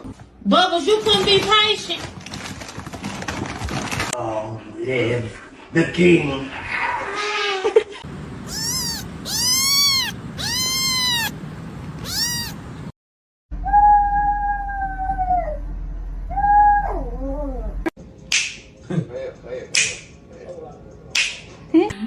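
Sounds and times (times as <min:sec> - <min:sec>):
cat yowling: 0:08.4 - 0:12.6
cats meowing: 0:08.4 - 0:12.9.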